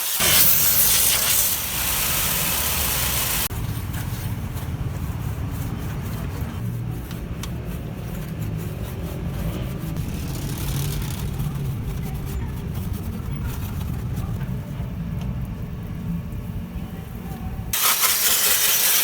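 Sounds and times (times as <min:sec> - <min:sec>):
spray hissing: 0:00.0 - 0:03.5, 0:10.0 - 0:14.6
low engine-like rumble: 0:03.4 - 0:17.8.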